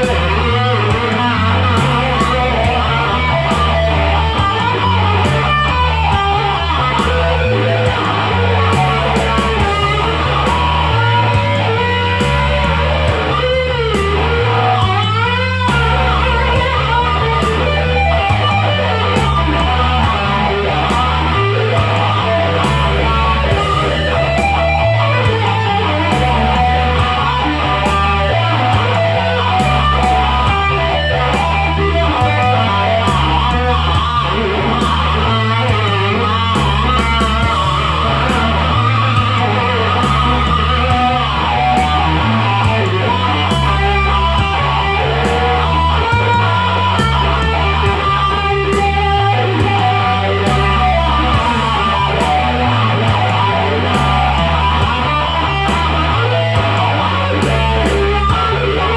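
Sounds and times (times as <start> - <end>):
bass line: 0.0 - 58.9
electric guitar lead line: 0.0 - 58.9
steady beat: 0.0 - 58.9.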